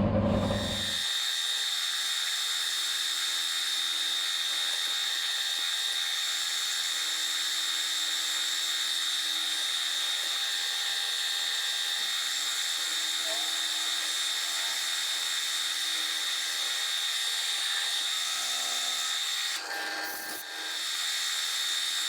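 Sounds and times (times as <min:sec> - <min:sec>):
milling machine whining: 0:00.0 - 0:01.0.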